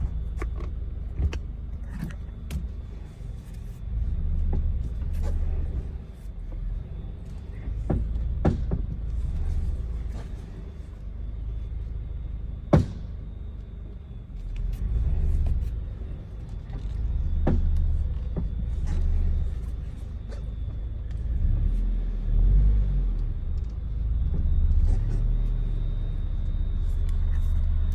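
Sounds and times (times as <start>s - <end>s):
car engine low rumble: 0.0s - 27.9s
sharp knocks from car front end: 7.9s - 9.0s, 12.7s - 13.1s.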